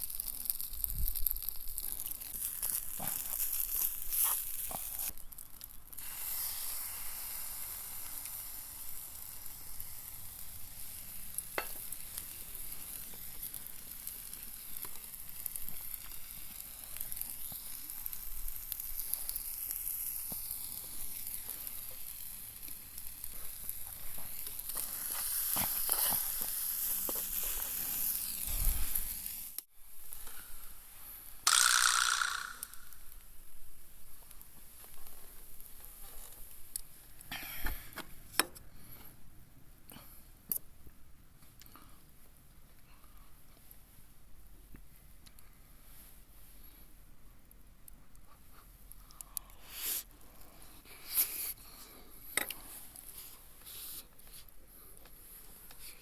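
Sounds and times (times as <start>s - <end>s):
food sizzling in a frying pan: 0.0s - 33.2s.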